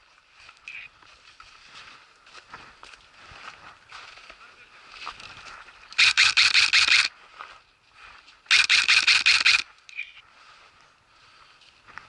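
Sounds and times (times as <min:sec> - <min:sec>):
airsoft gun full-auto bursts: 0:06.0 - 0:07.1, 0:08.5 - 0:09.7.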